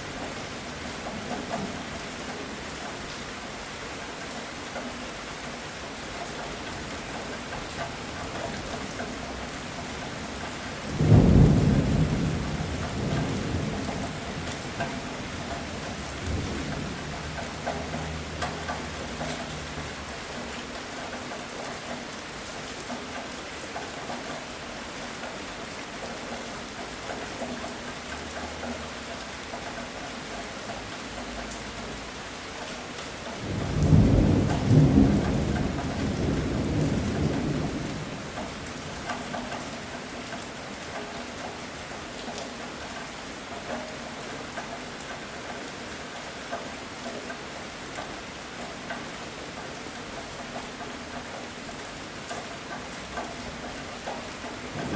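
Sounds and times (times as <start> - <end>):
heavy rain: 0.0 - 54.9
thunder cracks and rumble: 9.9 - 18.5, 33.4 - 39.0, 54.7 - 54.9.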